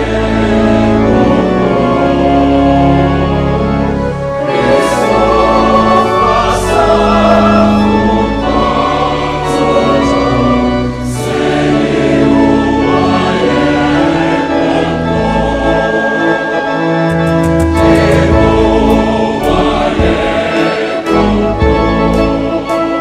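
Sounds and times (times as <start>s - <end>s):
choir singing gospel: 0.0s - 23.0s
instrumental accompaniment: 0.0s - 23.0s.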